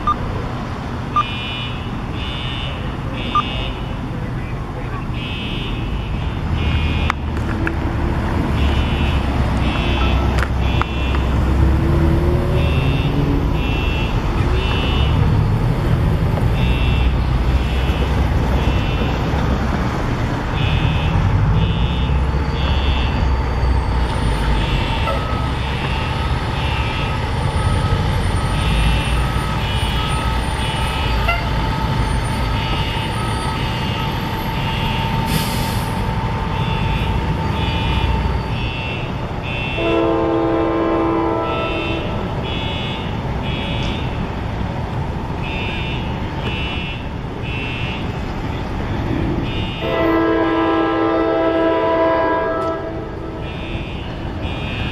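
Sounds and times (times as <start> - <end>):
heavy engine rumbling: 0.0 - 54.9
fire alarm beeping: 1.2 - 4.0, 5.1 - 7.1, 8.5 - 11.3, 12.6 - 15.2, 16.6 - 19.1, 20.6 - 39.9, 41.6 - 44.2, 45.4 - 48.1, 49.4 - 50.0, 53.4 - 54.9.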